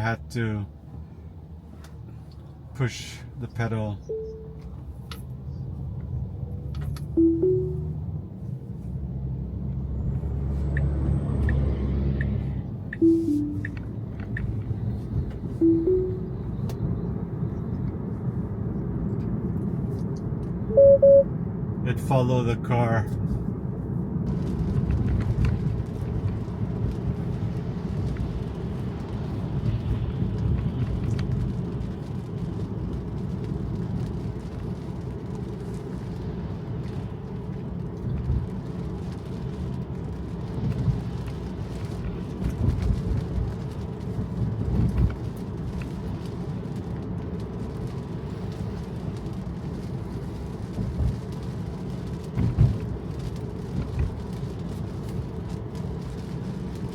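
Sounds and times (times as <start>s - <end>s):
road and tyre rumble: 0.0s - 56.9s.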